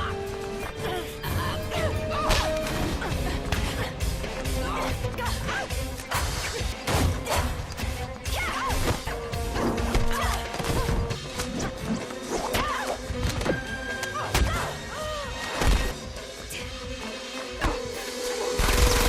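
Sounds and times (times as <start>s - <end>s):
action film score: 0.0s - 19.0s.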